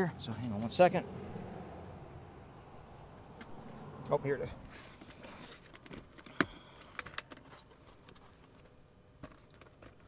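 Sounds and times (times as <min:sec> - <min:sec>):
cable connectors clicking and rattling: 0:05.0 - 0:10.0.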